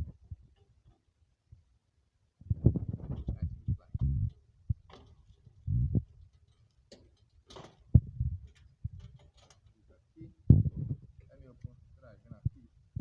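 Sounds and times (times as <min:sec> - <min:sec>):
clicks and knocks of objects handled: 0:02.8 - 0:09.9.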